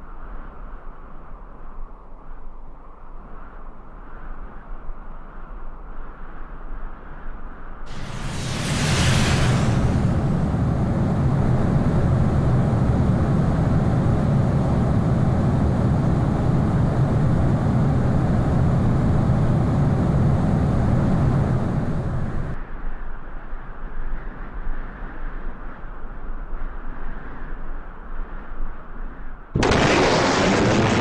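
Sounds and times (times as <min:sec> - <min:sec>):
airplane rumble in flight: 0:07.9 - 0:22.6
whoosh: 0:07.9 - 0:22.6.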